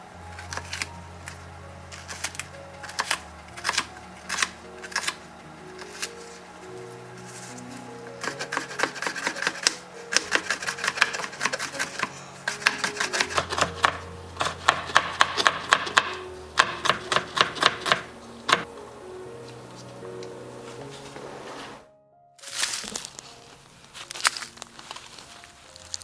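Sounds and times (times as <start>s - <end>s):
background music: 0.0s - 26.0s
knife chopping on cutting board: 8.3s - 18.6s.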